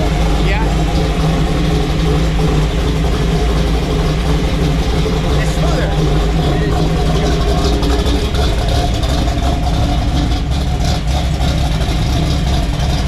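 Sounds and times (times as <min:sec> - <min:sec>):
car engine running: 0:00.0 - 0:13.0.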